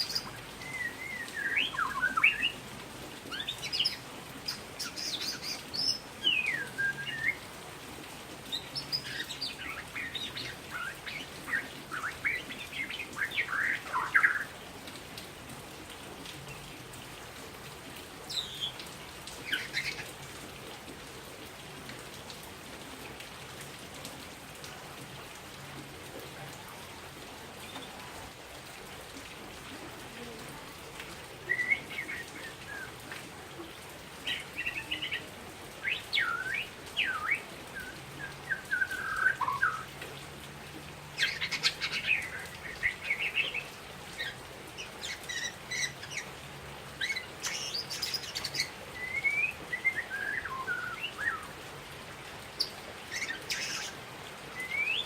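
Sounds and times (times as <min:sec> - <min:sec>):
bird singing whistled notes: 0:00.1 - 0:02.6, 0:04.8 - 0:07.4, 0:31.5 - 0:32.9, 0:35.9 - 0:39.9, 0:47.1 - 0:51.5, 0:54.6 - 0:55.0.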